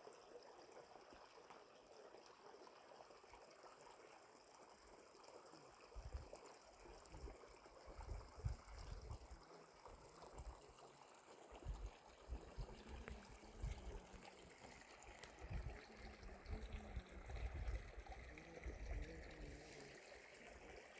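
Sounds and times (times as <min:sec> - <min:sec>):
small stream trickling: 0:00.0 - 0:20.9.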